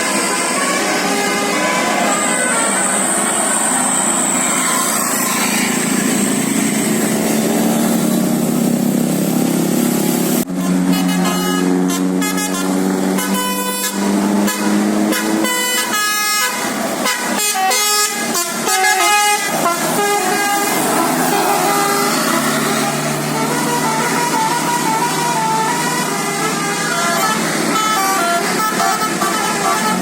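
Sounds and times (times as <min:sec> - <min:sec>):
musical bus air horn tune: 0:00.0 - 0:09.4, 0:10.3 - 0:30.0
noisy rising pitched tones: 0:01.1 - 0:10.5.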